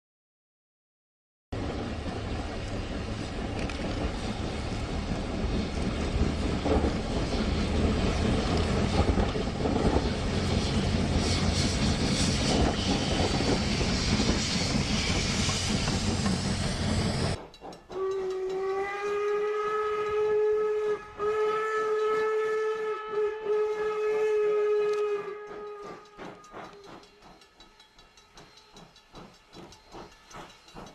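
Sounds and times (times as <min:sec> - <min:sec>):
snowplow train rushing noise: 0:01.6 - 0:30.9
train whistle blast: 0:17.9 - 0:27.2.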